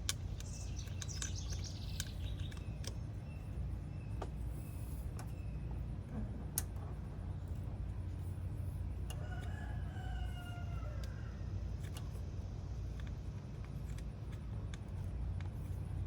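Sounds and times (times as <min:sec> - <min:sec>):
sharp clicks: 0:00.0 - 0:03.0
rooster crowing: 0:09.2 - 0:11.5.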